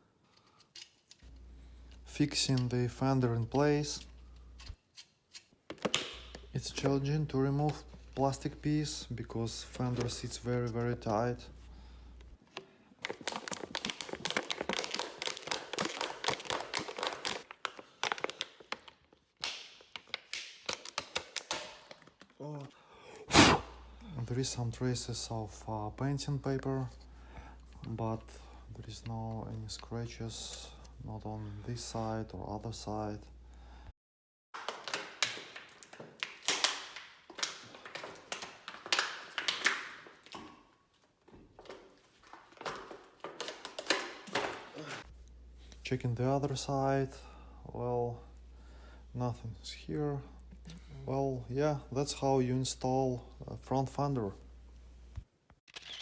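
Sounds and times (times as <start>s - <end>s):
plastic taps and crinkling: 5.7s - 7.0s, 12.5s - 22.4s, 34.6s - 40.6s, 41.3s - 44.6s
plastic sheet crinkling and scraping: 12.5s - 19.0s.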